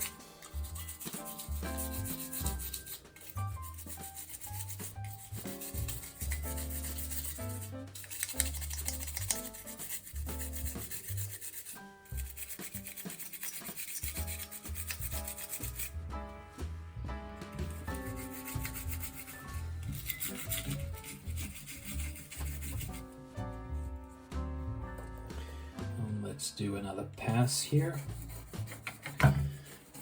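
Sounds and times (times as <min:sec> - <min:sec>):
scratchy scrubbing of circuit board: 0:00.0 - 0:16.0, 0:17.8 - 0:23.0, 0:27.7 - 0:30.0
background music with bass line: 0:00.0 - 0:29.7.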